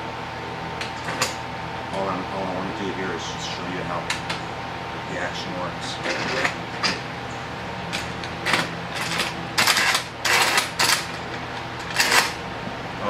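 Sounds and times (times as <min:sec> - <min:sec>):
bar clamp scraping clicks: 0:06.0 - 0:07.0.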